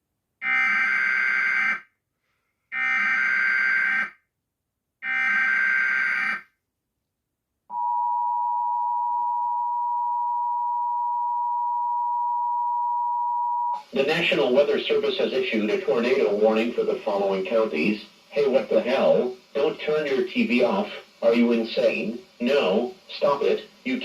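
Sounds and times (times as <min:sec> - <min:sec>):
two-tone attention signal: 0:07.7 - 0:13.8.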